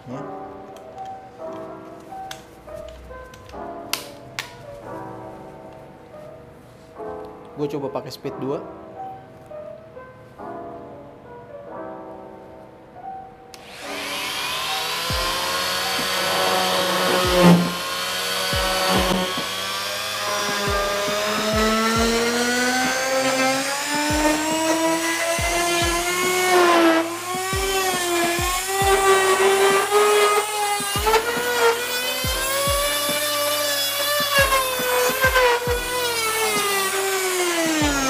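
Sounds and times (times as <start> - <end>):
oscillating multi-tool whine: 13.6 - 38.0.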